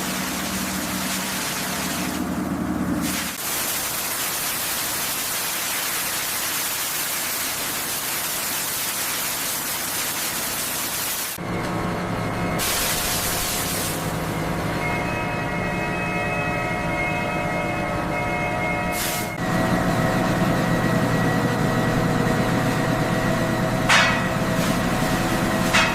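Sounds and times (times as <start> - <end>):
loud steady hiss: 0.0 - 2.3, 3.0 - 11.4, 12.6 - 14.2
machinery hum: 11.4 - 25.9.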